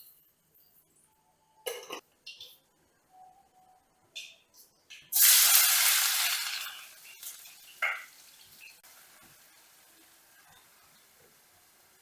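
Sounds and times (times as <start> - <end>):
food sizzling in hot oil: 5.2 - 12.0.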